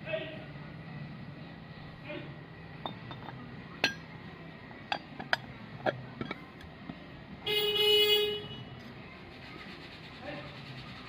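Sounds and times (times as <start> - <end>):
light metallic clinks: 2.8 - 4.1.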